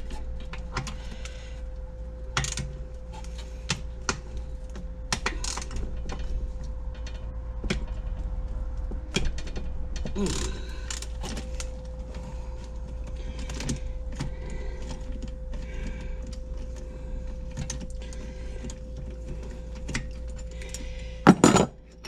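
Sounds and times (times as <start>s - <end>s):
steady hum: 0.0s - 22.0s
clicks of tools and metal parts: 20.7s - 21.8s.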